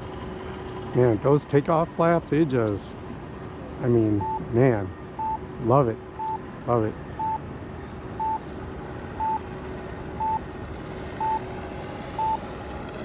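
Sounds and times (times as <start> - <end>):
model plane engine drone: 5.8 - 13.0.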